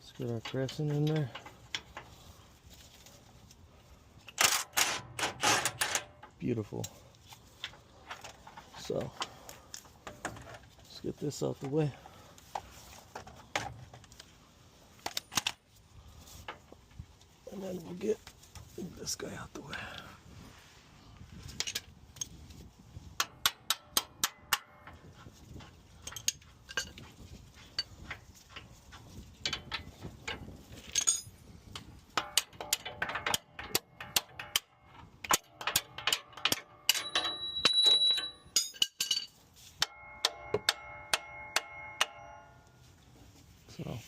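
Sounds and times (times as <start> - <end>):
metal parts clanking: 0.0 - 2.1, 4.2 - 11.0, 27.7 - 42.8
chiming metallic ring: 36.9 - 38.7, 39.8 - 42.9.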